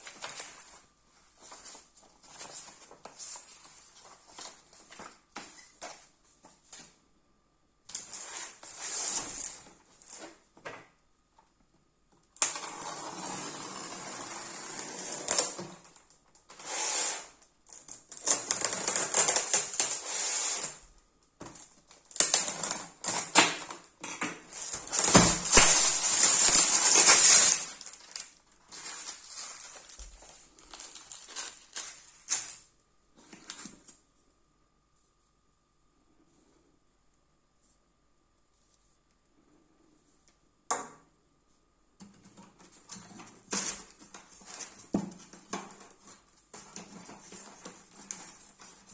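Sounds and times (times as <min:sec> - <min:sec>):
packaging rustling and crinkling: 0:00.0 - 0:06.8, 0:24.5 - 0:33.9, 0:42.6 - 0:48.9.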